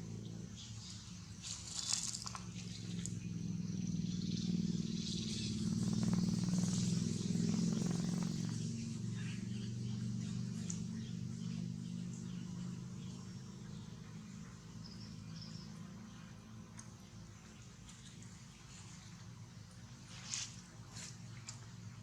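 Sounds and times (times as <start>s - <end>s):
low motor hum: 5.6s - 8.7s.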